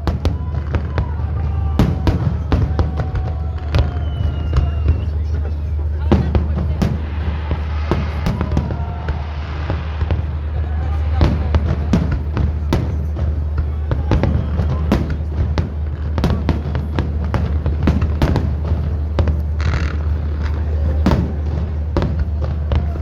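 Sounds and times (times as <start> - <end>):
firework crackle: 0.0 - 23.0
firework shells bursting: 6.3 - 13.8.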